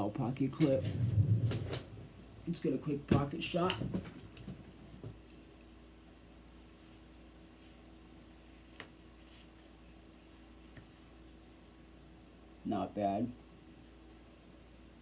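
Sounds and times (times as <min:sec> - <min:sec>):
low steady hum: 0:00.0 - 0:15.0
cloth rustling: 0:05.1 - 0:11.8.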